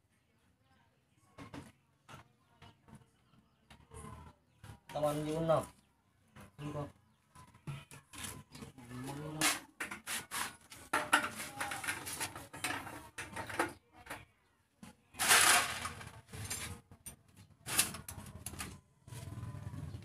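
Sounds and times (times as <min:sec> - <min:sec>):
metal tools clattering: 0:10.8 - 0:13.8, 0:15.2 - 0:18.1.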